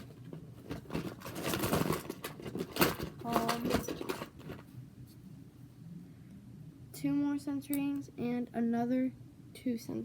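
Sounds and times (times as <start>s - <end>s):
plastic rings rattling: 0.0s - 4.7s.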